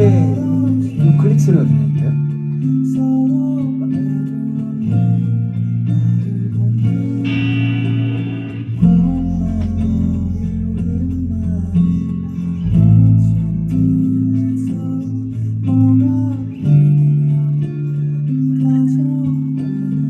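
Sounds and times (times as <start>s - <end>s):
deep bass note: 0.0s - 2.3s, 6.8s - 11.9s
guitar chords: 0.0s - 20.0s.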